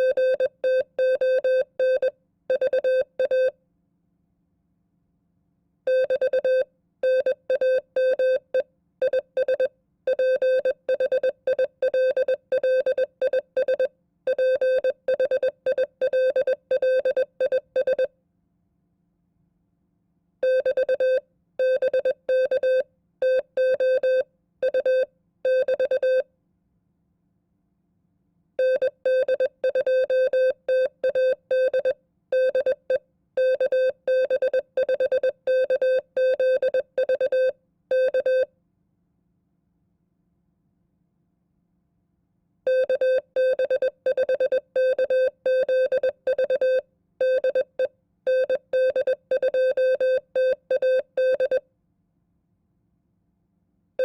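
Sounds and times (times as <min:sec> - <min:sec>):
morse code tone: 0:28.7 - 0:38.5, 0:42.8 - 0:51.6.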